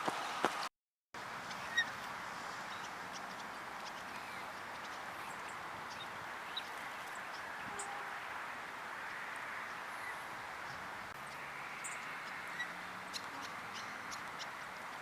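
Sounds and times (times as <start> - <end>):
outdoor background hiss: 0.0 - 15.0.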